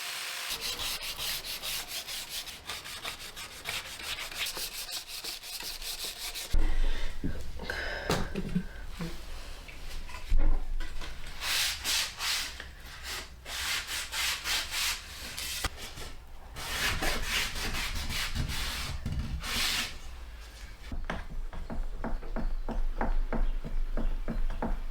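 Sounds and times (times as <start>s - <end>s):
hand sanding wood: 0.5s - 6.6s, 11.4s - 15.7s, 16.6s - 20.0s.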